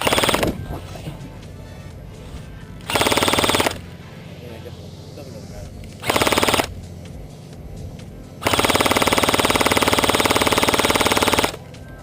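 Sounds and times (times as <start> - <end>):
airsoft gun firing bursts: 0.0 - 0.6, 2.9 - 3.8, 6.0 - 6.7, 8.4 - 11.6.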